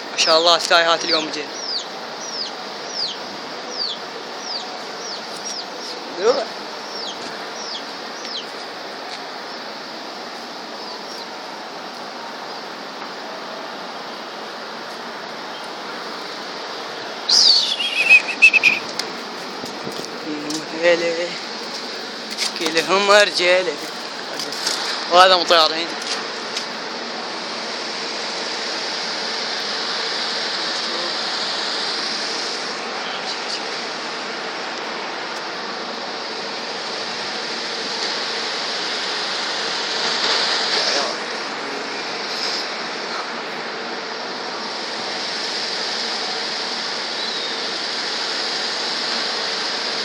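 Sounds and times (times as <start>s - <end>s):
steady background hiss: 0.0s - 50.0s
high falling bird chirps: 1.1s - 6.0s, 6.8s - 8.6s, 10.7s - 11.4s, 17.2s - 19.0s.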